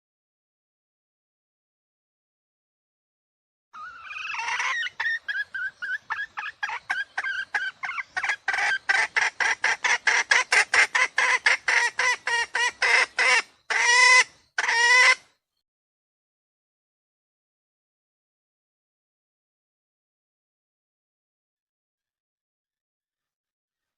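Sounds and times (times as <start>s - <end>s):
junglefowl clucking and calling: 3.8s - 15.3s.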